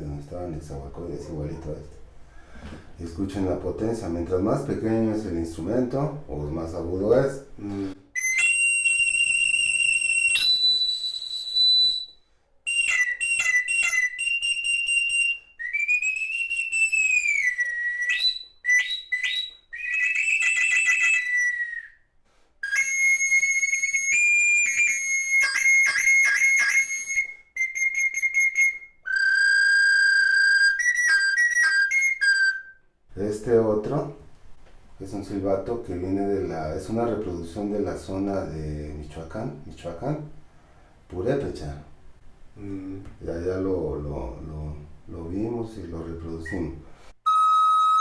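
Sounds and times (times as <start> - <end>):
breaths: 2.1 - 3.0, 7.6 - 8.1, 22.2 - 22.6, 40.4 - 41.1, 46.9 - 47.2
high-pitched whistle blasts: 8.2 - 22.0, 22.6 - 32.8, 47.2 - 48.0.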